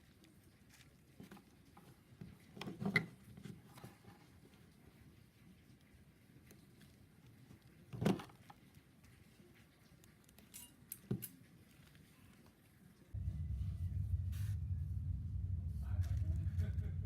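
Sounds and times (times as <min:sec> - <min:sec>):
steady low hum: 0:13.2 - 0:17.0.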